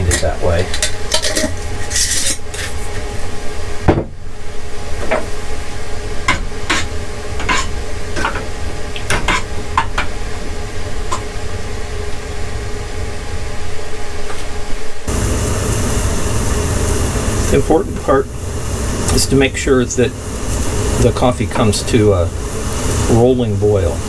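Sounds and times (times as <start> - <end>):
steady low hum: 15.0 - 24.0.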